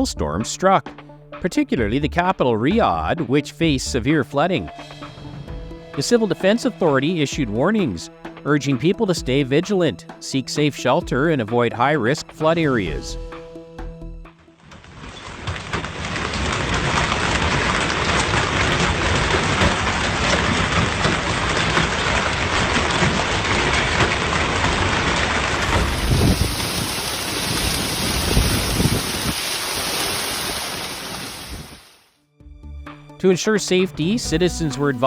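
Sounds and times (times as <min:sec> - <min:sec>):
heavy rain pouring: 0:14.6 - 0:32.1.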